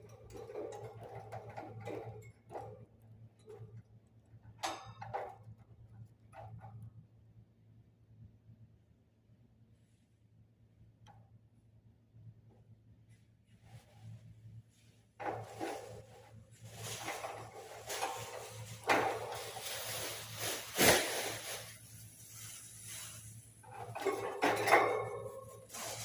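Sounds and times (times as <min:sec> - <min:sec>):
dishes clattering: 0:23.7 - 0:26.0.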